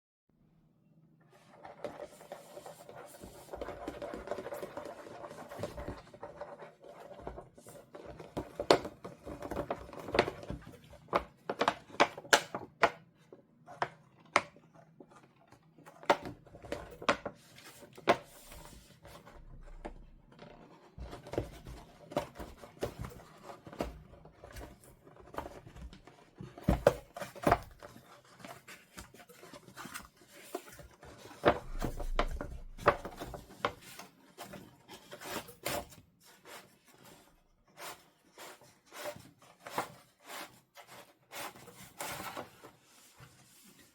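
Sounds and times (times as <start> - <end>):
plastic and cardboard crinkling: 1.4 - 43.9.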